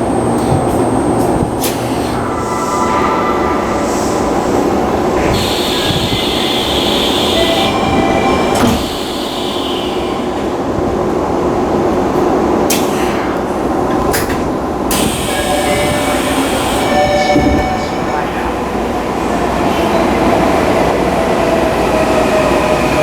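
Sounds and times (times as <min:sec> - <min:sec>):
train interior rumble: 0:00.0 - 0:23.0
train door chime: 0:05.7 - 0:09.3, 0:15.0 - 0:18.5.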